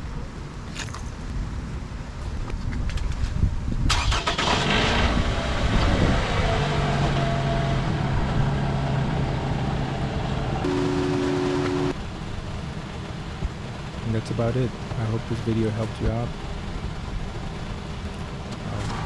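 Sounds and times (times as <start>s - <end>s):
car engine starting and idling: 3.8s - 19.0s
steady two-note tone: 10.6s - 12.0s.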